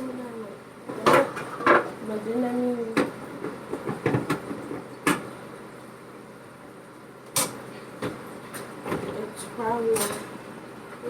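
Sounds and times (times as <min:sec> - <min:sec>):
dishes and pans clattering: 0:00.9 - 0:01.9.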